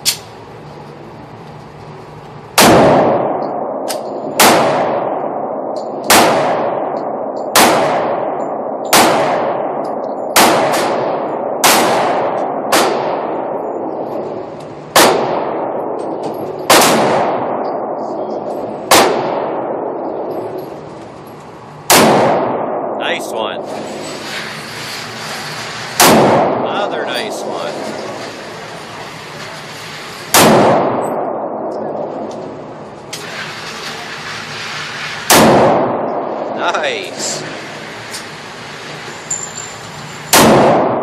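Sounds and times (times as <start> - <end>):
single gunshots with ringing echo: 2.6 - 14.0, 14.9 - 20.4, 21.8 - 23.2, 30.3 - 32.3, 40.3 - 41.0.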